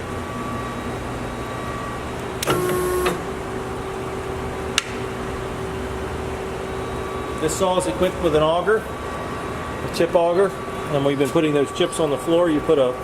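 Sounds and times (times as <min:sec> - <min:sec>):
sharp click: 0:04.8 - 0:05.0.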